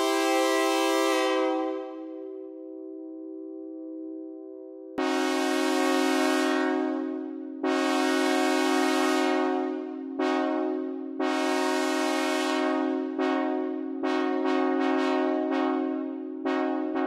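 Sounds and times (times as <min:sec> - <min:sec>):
multi-chime train horn blasts: 0:00.0 - 0:02.1, 0:05.0 - 0:17.0.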